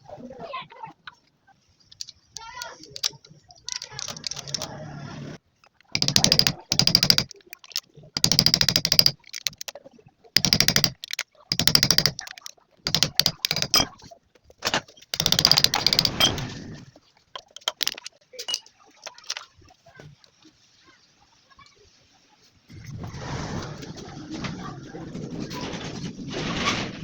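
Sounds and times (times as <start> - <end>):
rapid mechanical clicking: 2.0 - 4.8, 5.8 - 9.8, 10.4 - 14.0, 14.6 - 16.6, 17.4 - 18.1.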